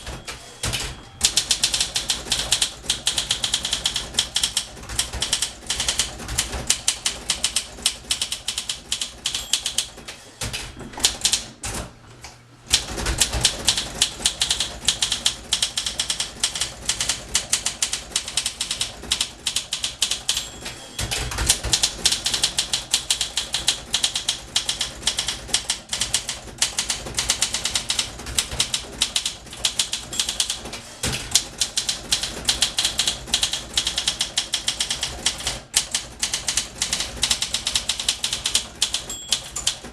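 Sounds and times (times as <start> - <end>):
typewriter keys typing fast: 0.0 - 11.9, 12.7 - 39.9
heavier typewriter thumps: 21.0 - 22.2, 30.6 - 32.5.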